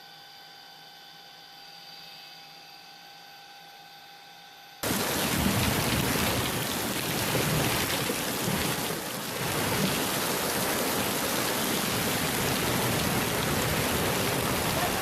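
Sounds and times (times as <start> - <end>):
water rushing: 4.8 - 15.0.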